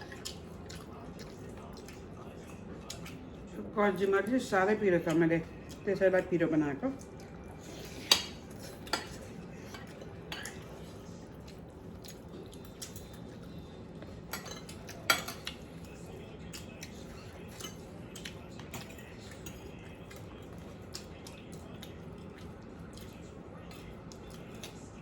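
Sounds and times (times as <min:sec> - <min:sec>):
cutlery clinking on a plate: 0:07.9 - 0:10.8, 0:14.3 - 0:15.6, 0:17.2 - 0:19.7.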